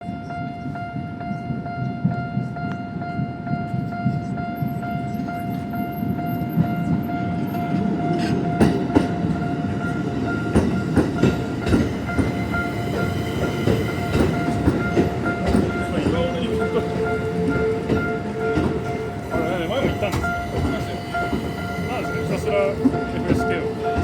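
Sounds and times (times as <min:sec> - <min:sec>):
crossing warning bell ringing: 0:00.0 - 0:24.0
train rumbling: 0:00.0 - 0:24.0
wheels clacking over rail joints: 0:06.5 - 0:24.0.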